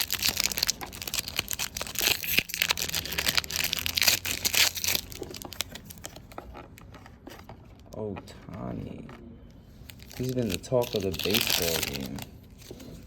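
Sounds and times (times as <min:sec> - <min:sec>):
wrapper tearing and crinkling: 0:00.0 - 0:06.3, 0:09.8 - 0:13.0.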